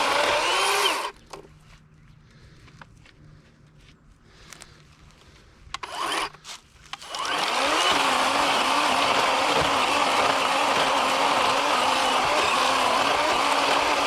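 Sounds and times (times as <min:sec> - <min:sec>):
electric chainsaw running: 0:00.0 - 0:01.2, 0:05.8 - 0:06.4, 0:07.0 - 0:14.0.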